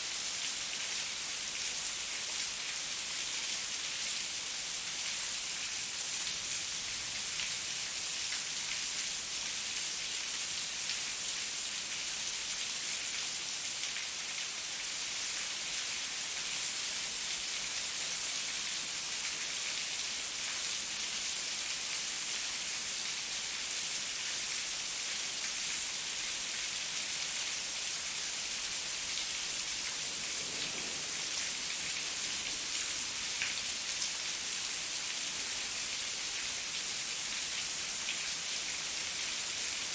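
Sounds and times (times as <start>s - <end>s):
heavy rain falling: 28.6s - 35.8s.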